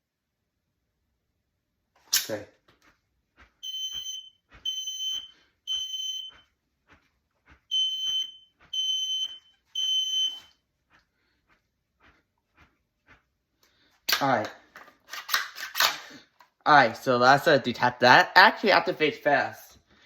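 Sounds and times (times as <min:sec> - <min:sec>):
smoke alarm beeping: 0:03.6 - 0:06.5, 0:07.7 - 0:10.6.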